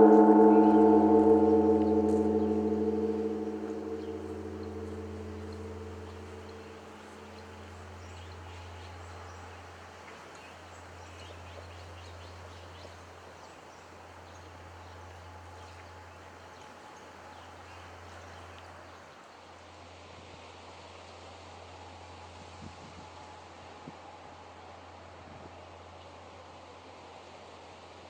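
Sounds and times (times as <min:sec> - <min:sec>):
temple bell humming: 0:00.0 - 0:08.3.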